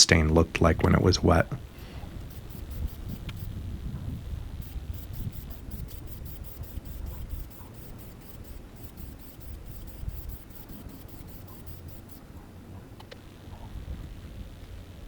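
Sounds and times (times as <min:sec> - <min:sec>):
quick scratching strokes: 0:01.8 - 0:03.6, 0:04.6 - 0:12.3.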